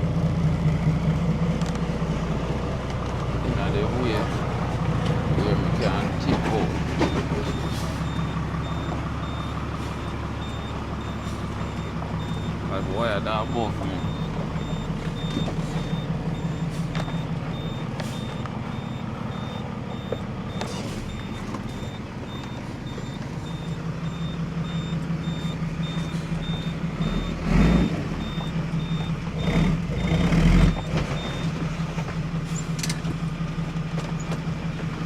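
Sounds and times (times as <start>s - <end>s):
truck engine running: 0.0s - 35.0s
reversing alarm beeping: 5.3s - 31.6s.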